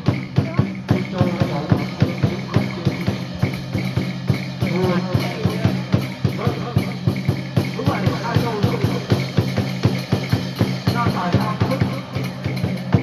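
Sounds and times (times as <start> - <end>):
rapid steady drumbeat: 0.0 - 13.0.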